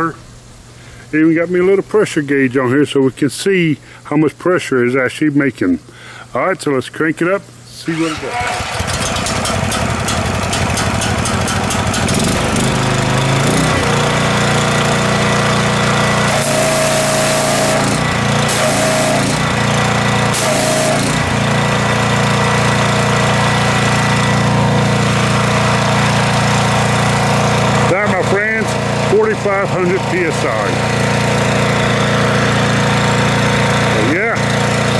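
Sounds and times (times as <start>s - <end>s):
pressure washer motor running: 7.8s - 34.9s
high-pressure spray hiss: 16.3s - 19.4s, 20.3s - 21.2s.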